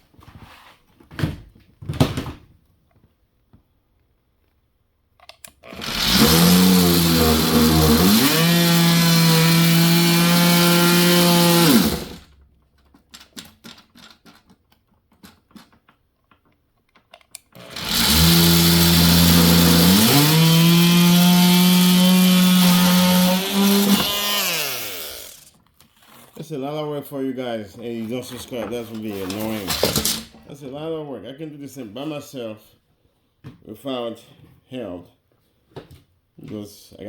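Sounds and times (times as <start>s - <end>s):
oscillating multi-tool cutting: 5.6s - 12.2s, 17.6s - 25.5s.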